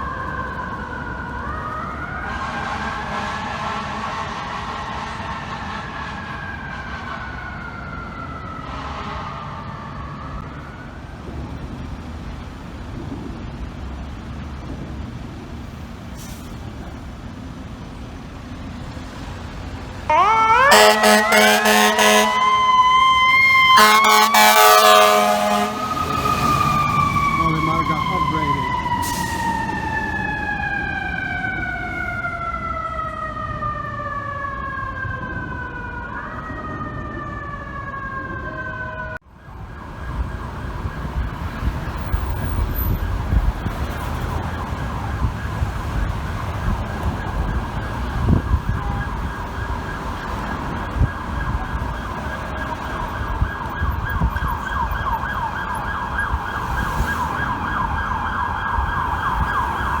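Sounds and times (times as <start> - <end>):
siren wail falling in pitch: 0.0 - 4.2, 4.8 - 10.9, 20.1 - 60.0
traffic rumble: 0.0 - 60.0
electronic siren yelping: 20.1 - 32.9, 44.4 - 60.0.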